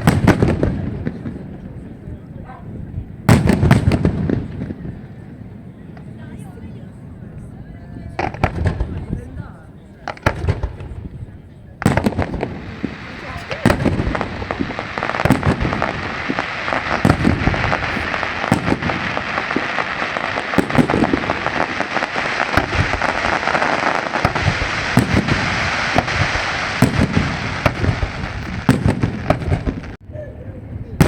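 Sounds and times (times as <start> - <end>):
fireworks sharp bangs: 0.0 - 7.3, 8.0 - 9.4, 10.0 - 30.0
fireworks crackling: 0.0 - 30.0
heavy booms of shells bursting: 11.8 - 30.0.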